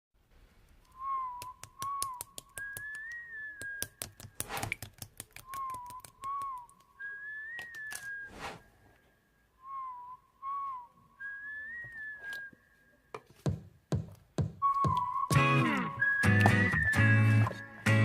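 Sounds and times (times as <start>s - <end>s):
person whistling a tune: 0.9s - 4.0s, 5.4s - 8.3s, 9.6s - 12.7s, 14.6s - 18.0s.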